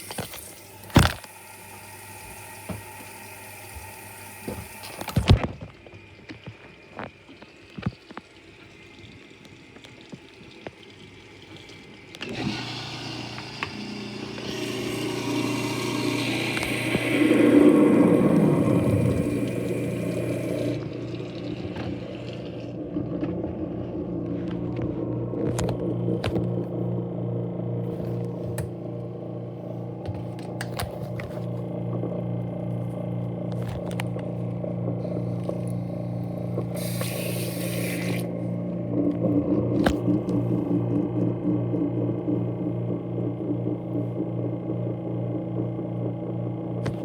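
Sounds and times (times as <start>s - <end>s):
garbage disposal motor humming: 0.0s - 47.0s
water drips: 6.0s - 12.3s
clicks and rattles in grinder: 12.1s - 26.8s, 33.3s - 38.3s.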